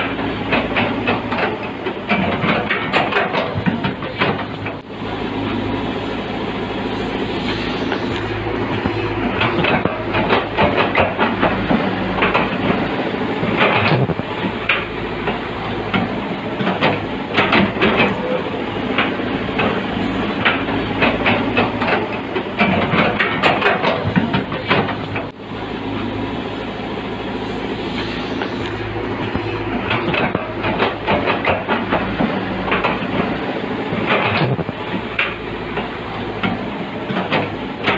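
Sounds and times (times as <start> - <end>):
diesel engine running: 0.0 - 37.9
metallic clanks and knocks: 0.5 - 4.8, 8.7 - 12.8, 13.5 - 18.4, 20.4 - 25.3, 28.6 - 33.3, 33.9 - 37.9.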